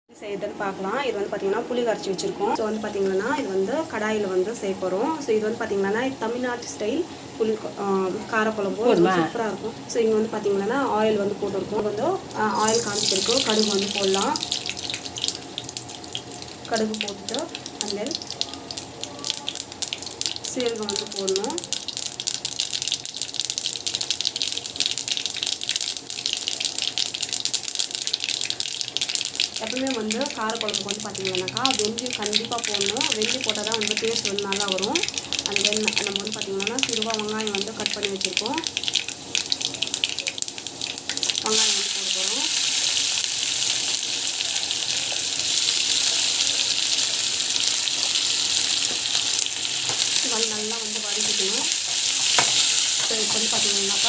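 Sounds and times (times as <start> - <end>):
seeds spluttering in hot oil: 12.3 - 54.0.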